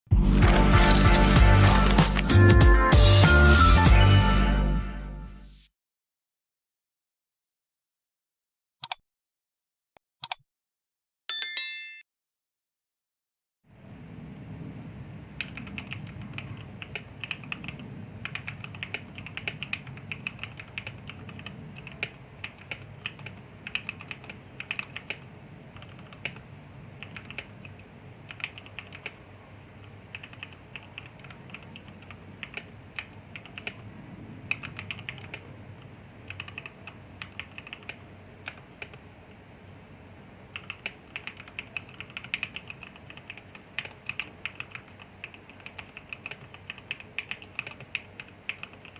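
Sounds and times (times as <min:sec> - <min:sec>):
mechanical keyboard typing: 0:00.4 - 0:02.4, 0:15.4 - 0:33.9, 0:34.5 - 0:39.1, 0:40.5 - 0:48.9.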